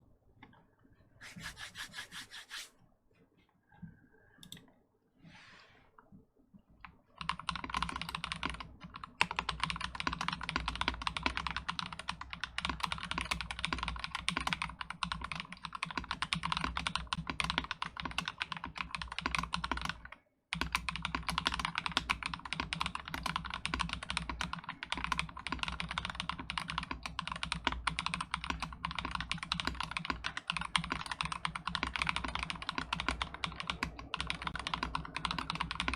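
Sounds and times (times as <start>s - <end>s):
fast mechanical keyboard typing: 7.2s - 35.9s.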